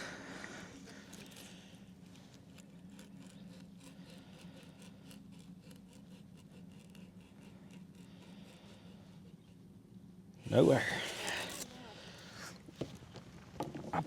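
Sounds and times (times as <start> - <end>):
clicking and scratching: 0.8 - 9.6.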